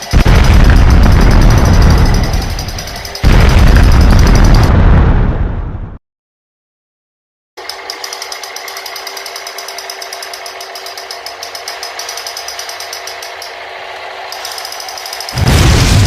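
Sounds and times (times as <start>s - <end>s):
toy machine gun rattling: 0.0s - 4.7s, 7.6s - 13.6s, 14.3s - 15.4s.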